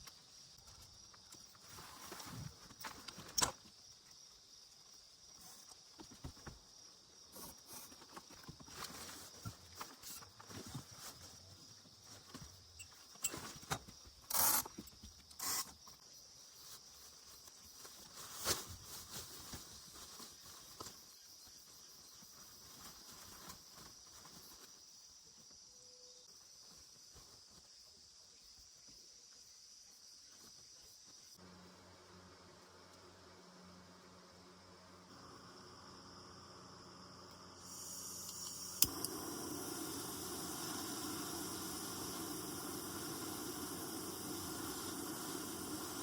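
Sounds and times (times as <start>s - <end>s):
insects chirring: 0.0s - 46.0s.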